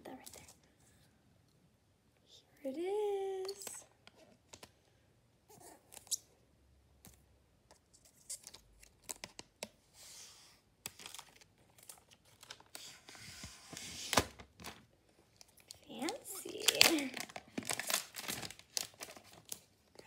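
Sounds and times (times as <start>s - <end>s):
packaging rustling and tearing: 10.9s - 19.7s.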